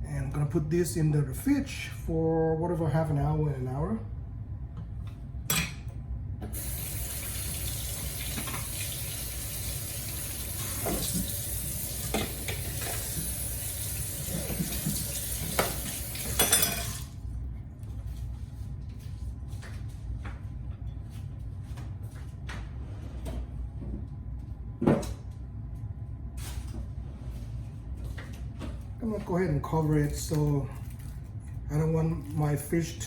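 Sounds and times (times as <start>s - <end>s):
tap running into sink: 6.5s - 17.1s.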